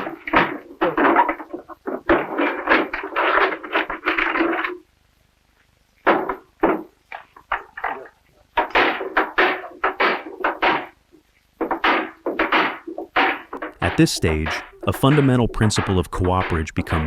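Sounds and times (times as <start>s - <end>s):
hammer blows on wooden barrel: 13.2s - 17.0s.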